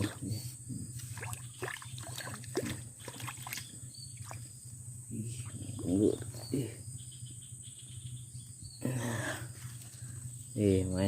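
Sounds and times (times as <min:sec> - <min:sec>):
water splashing: 0:00.0 - 0:00.3, 0:01.0 - 0:04.5
high insect drone: 0:00.0 - 0:11.0.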